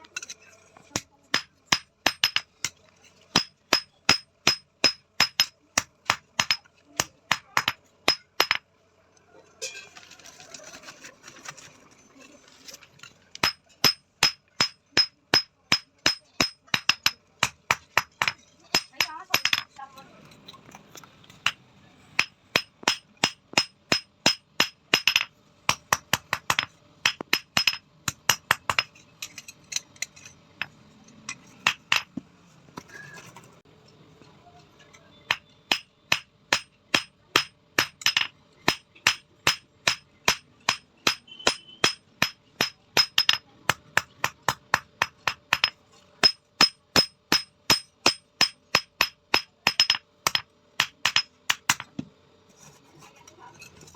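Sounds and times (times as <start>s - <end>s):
hammer striking metal on anvil: 1.3s - 2.5s, 3.3s - 8.6s, 13.4s - 19.7s, 22.2s - 29.0s, 35.3s - 51.9s.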